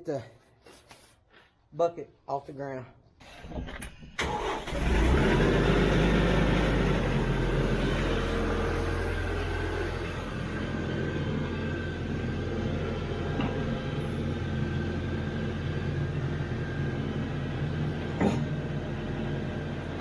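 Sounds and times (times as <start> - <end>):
tractor diesel engine starting: 4.2 - 20.0.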